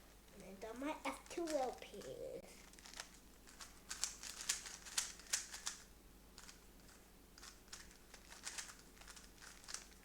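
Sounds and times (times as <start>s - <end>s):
puzzle cube layers clicking: 2.8s - 5.8s, 6.4s - 10.0s.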